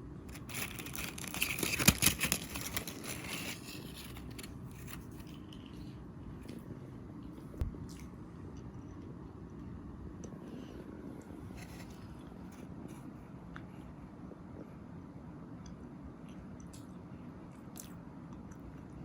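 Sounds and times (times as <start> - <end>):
low background hum: 0.0 - 19.0
crinkling handling sounds: 0.2 - 6.7, 11.2 - 13.1.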